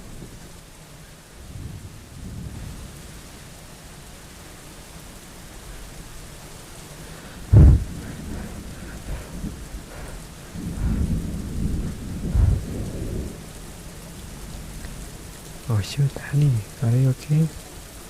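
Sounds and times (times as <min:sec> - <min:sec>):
steady rain: 0:00.0 - 0:18.0
sharp thunderclap: 0:01.4 - 0:02.9, 0:07.4 - 0:13.5
rolling thunder: 0:01.4 - 0:03.5, 0:07.3 - 0:15.3.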